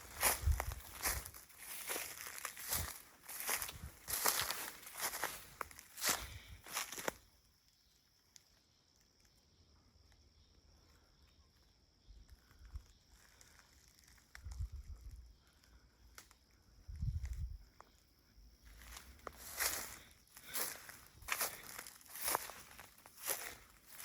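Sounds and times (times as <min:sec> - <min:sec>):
footsteps on dirt trail: 0:00.0 - 0:07.2, 0:18.7 - 0:24.0.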